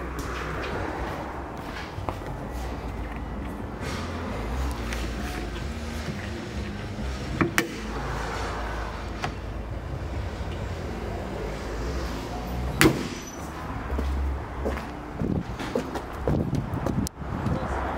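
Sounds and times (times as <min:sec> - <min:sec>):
car engine low rumble: 0:00.0 - 0:17.9
sharp clicks and knocks: 0:04.7 - 0:07.9.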